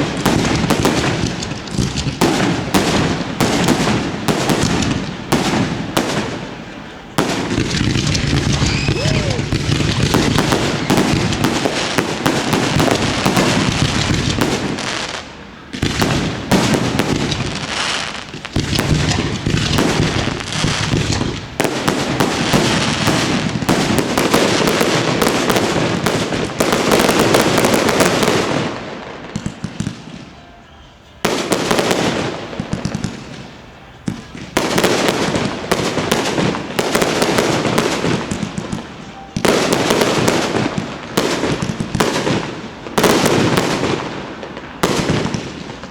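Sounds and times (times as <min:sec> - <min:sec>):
fireworks bangs and crackling: 0:00.0 - 0:45.9.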